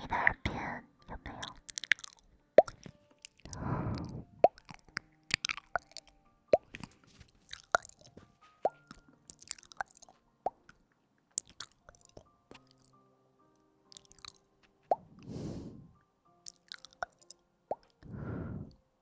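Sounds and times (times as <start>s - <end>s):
wet clicks and pops: 1.3s - 10.8s, 11.4s - 12.9s, 13.9s - 15.1s, 16.5s - 18.0s
soft breathy puff: 3.5s - 4.4s, 15.0s - 16.0s, 18.0s - 18.8s
crackly rustling: 4.6s - 13.0s.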